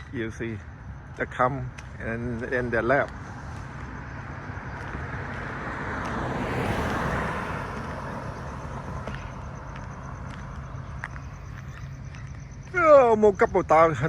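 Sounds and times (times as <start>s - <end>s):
vehicle passing by: 2.4s - 11.5s.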